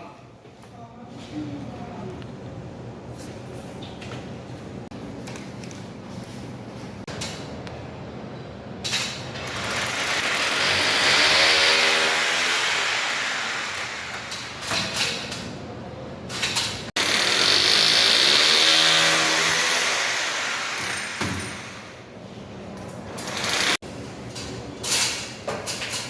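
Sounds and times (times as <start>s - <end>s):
loud motor with hiss: 10.0s - 14.4s, 17.0s - 21.8s.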